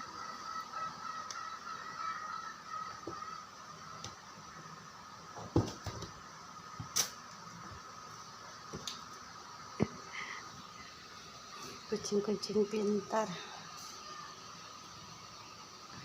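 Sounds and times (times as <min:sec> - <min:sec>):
faint high whine: 0:00.0 - 0:16.0
thumps and knocks: 0:05.4 - 0:06.2.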